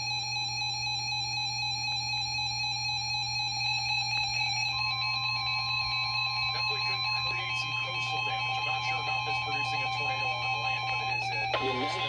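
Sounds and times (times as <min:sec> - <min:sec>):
higher alarm tone: 0:01.7 - 0:12.0
buzzy electronic tone: 0:04.7 - 0:12.0.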